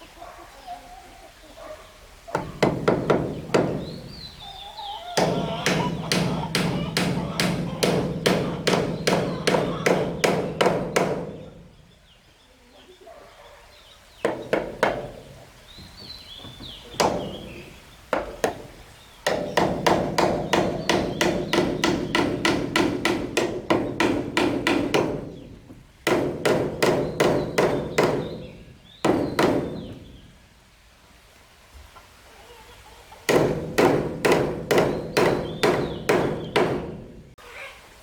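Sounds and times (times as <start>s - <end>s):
rapid blows on wood: 5.2s - 11.6s.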